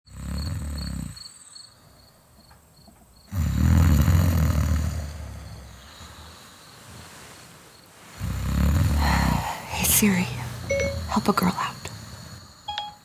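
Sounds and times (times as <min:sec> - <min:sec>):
person snoring: 0:00.1 - 0:01.2, 0:03.3 - 0:06.4, 0:08.2 - 0:12.5.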